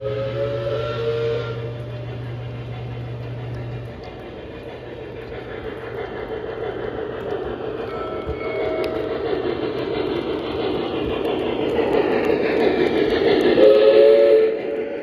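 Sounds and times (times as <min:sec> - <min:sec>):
steady low hum: 0:00.0 - 0:08.0
model train wheels rumbling: 0:00.0 - 0:15.0.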